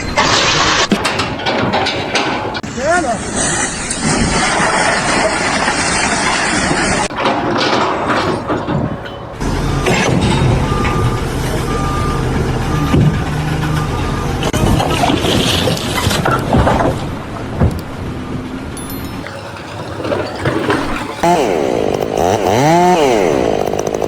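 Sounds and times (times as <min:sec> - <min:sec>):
construction site noise: 0:00.0 - 0:24.0
heavy vehicle engine running: 0:04.6 - 0:19.6
reversing alarm beeping: 0:09.0 - 0:14.7.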